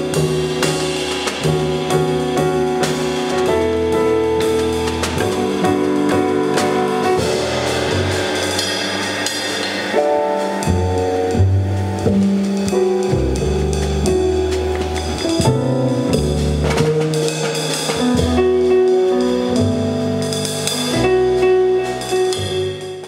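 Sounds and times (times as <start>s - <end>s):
bass line: 0.0s - 23.0s
drum kit on cymbals and drums: 0.0s - 23.0s
piano: 0.0s - 23.0s.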